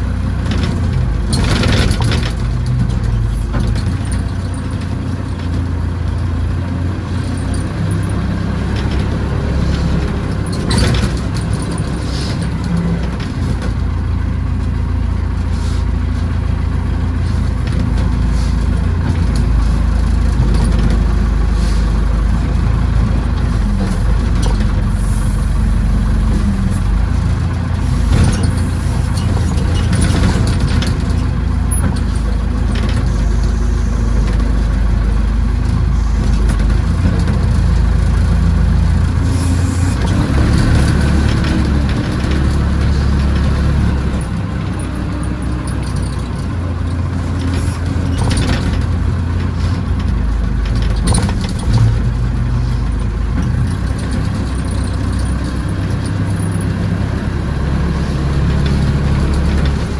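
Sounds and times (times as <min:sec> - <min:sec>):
backhoe engine running: 0:00.0 - 0:59.9
metal knocks and clanks: 0:17.2 - 0:44.4.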